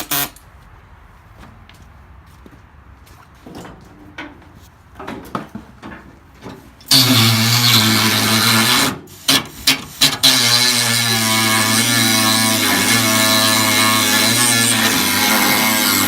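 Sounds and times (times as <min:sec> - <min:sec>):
handheld power tool running: 0:06.9 - 0:16.0.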